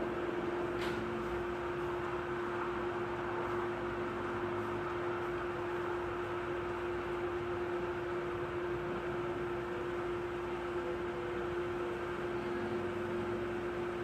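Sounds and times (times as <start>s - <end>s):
constant hum: 0.0s - 14.0s.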